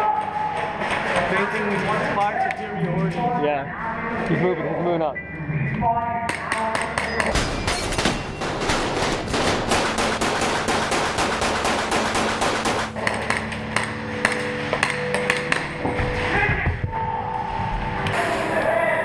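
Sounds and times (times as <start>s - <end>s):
airsoft gunfire: 7.3s - 13.0s.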